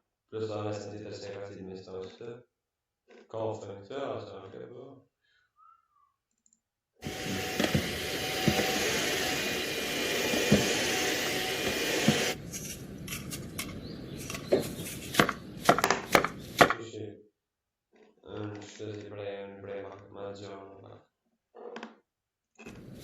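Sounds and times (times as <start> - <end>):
wooden knocks and clacks: 7.1 - 9.0.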